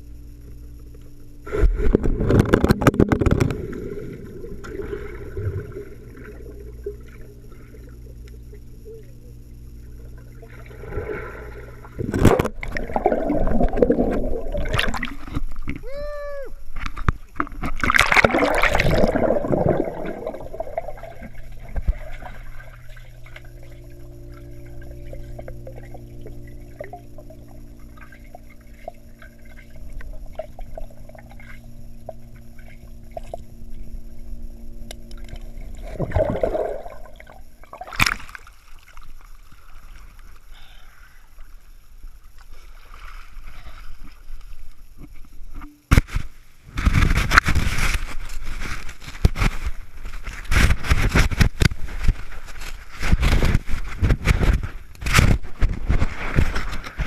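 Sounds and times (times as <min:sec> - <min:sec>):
low hum: 0:00.0 - 0:57.0
water churning: 0:01.5 - 0:15.9, 0:17.3 - 0:34.4, 0:35.1 - 0:40.4
water splashing and sloshing: 0:01.5 - 0:15.9, 0:16.7 - 0:57.0.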